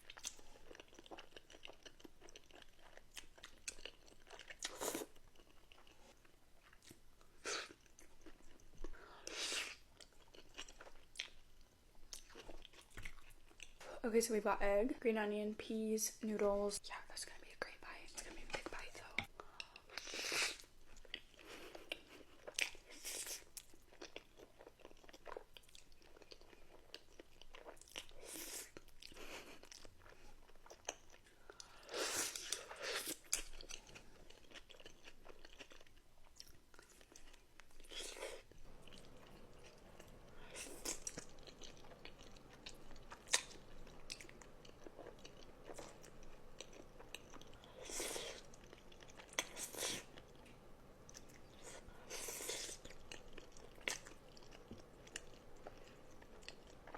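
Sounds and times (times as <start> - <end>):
crunchy chewing: 19.9 - 56.9.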